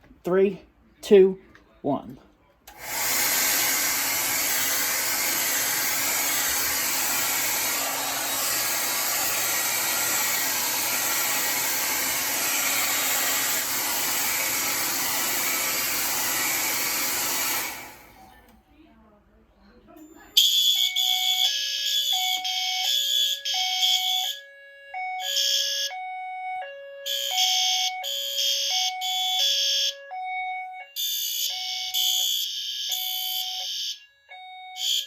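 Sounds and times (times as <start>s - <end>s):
hair dryer blowing: 2.7s - 18.3s.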